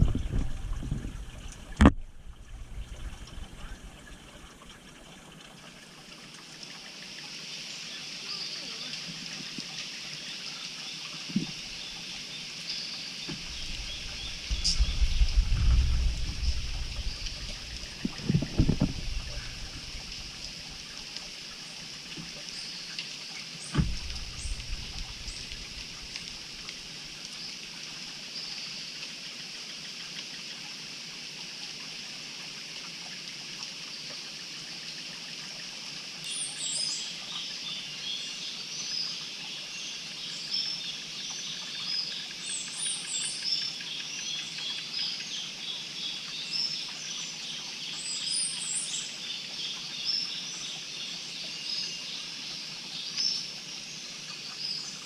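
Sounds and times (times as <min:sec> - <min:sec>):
steady high hiss: 0:06.9 - 0:27.6
bird-like chirping: 0:11.4 - 0:20.6.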